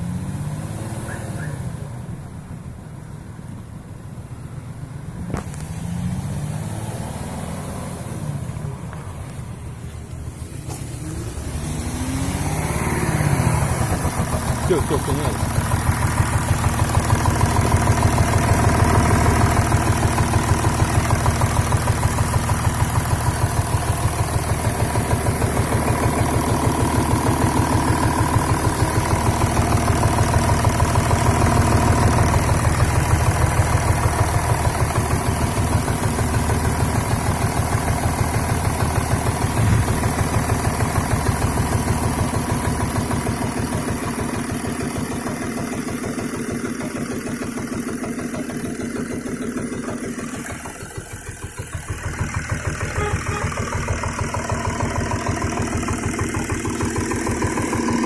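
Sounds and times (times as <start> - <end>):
diesel engine idling unevenly: 0.0 - 5.6, 7.3 - 58.0
regular engine knock: 13.7 - 58.0.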